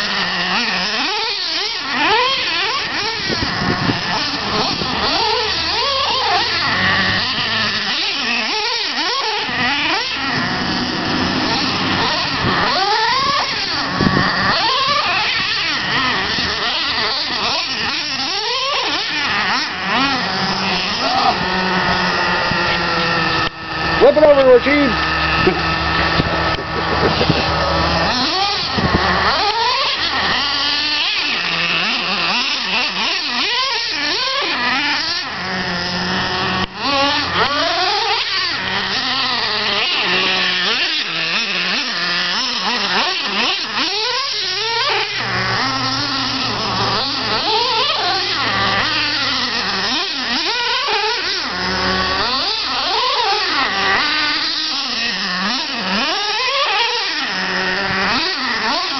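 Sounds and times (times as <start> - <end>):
nitro engines revving: 0.0 - 58.9.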